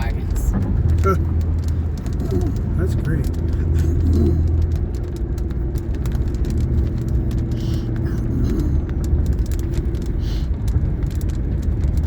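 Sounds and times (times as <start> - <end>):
road rumble: 0.0 - 12.0.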